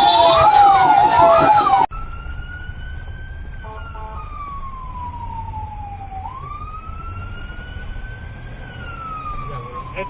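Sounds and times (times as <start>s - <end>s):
siren wailing: 0.0s - 10.0s.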